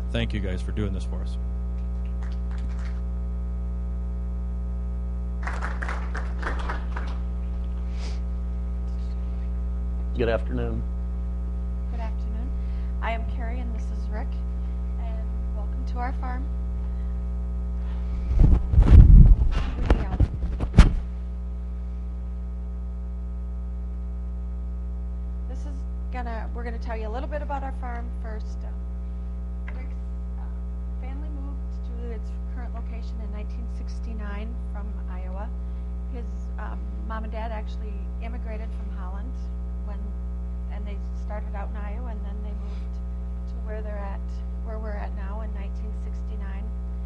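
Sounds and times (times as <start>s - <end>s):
electrical mains hum: 0.0s - 47.0s
muffled noise: 0.0s - 47.0s
microphone handling knocks: 18.2s - 21.1s.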